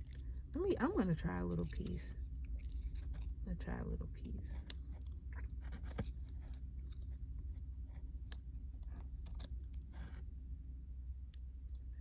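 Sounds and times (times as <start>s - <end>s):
person chewing food: 0.0s - 0.6s, 1.4s - 3.4s, 4.5s - 10.6s.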